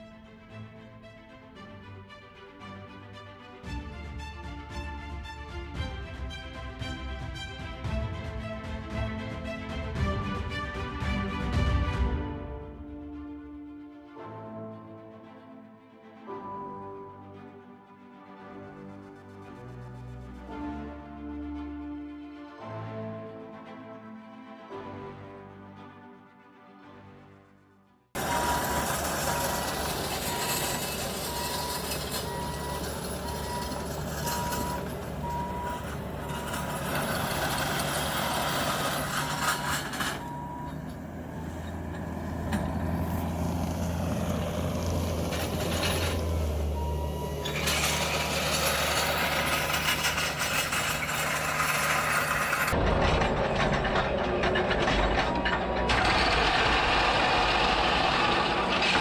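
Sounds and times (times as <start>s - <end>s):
reversing alarm beeping: 28.2s - 52.7s
diesel engine under load: 28.2s - 59.0s.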